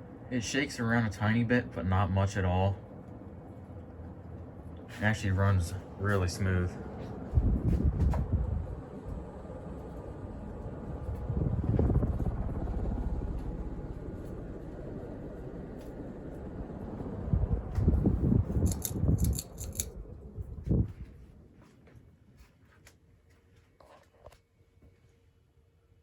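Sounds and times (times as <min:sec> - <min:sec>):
ceiling fan running: 0:00.0 - 0:23.4
sharp clicks: 0:18.6 - 0:20.0.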